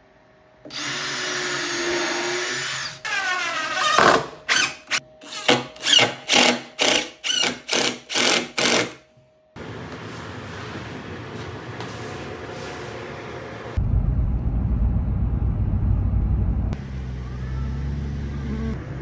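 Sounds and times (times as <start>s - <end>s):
power drill driving screws: 0.7s - 4.7s, 5.3s - 9.0s.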